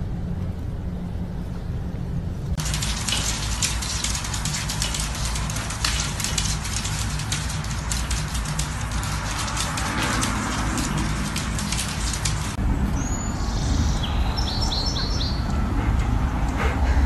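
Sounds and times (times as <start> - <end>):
dense crackling patter: 2.6 - 12.6
bird chirping: 12.9 - 15.6.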